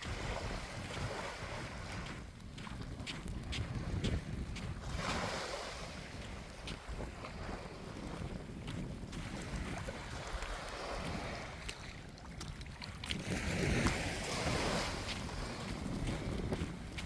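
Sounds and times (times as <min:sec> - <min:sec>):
waves washing onto beach: 0:00.0 - 0:17.0
wind rumbling on microphone: 0:00.0 - 0:17.0.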